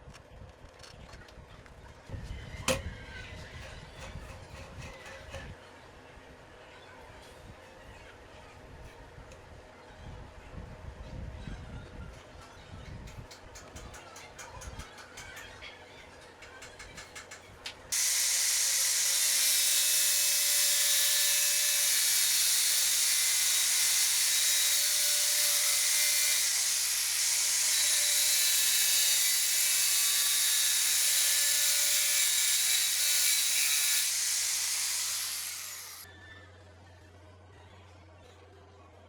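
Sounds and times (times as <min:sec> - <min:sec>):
power tool cutting metal: 0:17.9 - 0:36.0.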